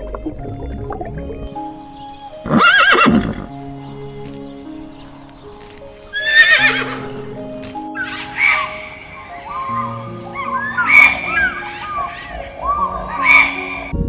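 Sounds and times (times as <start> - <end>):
background music with sustained notes: 0.0 - 14.0
horse whinnying: 2.4 - 3.5, 6.2 - 7.2.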